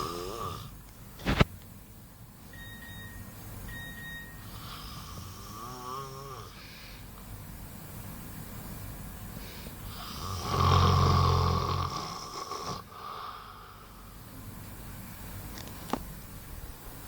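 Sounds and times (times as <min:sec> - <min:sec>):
boy snoring: 0:00.0 - 0:00.7, 0:04.5 - 0:06.6, 0:09.9 - 0:13.8
quiet breathing: 0:04.4 - 0:07.2, 0:09.3 - 0:14.2.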